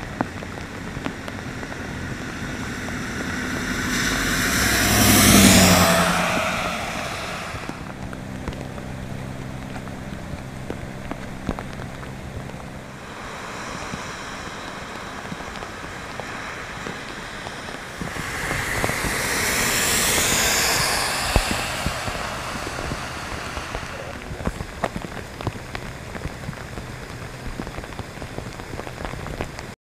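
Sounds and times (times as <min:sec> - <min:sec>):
low engine hum: 0:00.0 - 0:29.7
steady rain falling: 0:00.0 - 0:29.8
vehicle passing: 0:00.4 - 0:08.1, 0:12.8 - 0:24.5
raindrops ticking close by: 0:07.7 - 0:18.0, 0:24.2 - 0:29.7.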